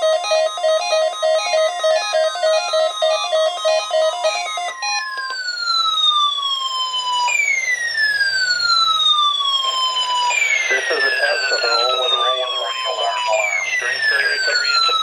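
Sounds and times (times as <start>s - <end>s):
electronic siren-like tone sweeping down: 0.0s - 15.0s
looping electronic melody: 0.0s - 15.0s
steady beep-like tone: 9.6s - 15.0s.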